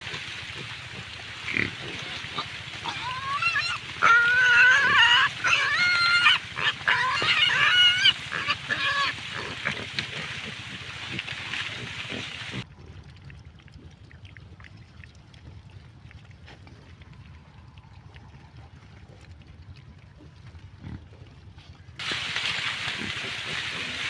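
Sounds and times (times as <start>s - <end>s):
piglets squealing: 1.5s - 10.4s.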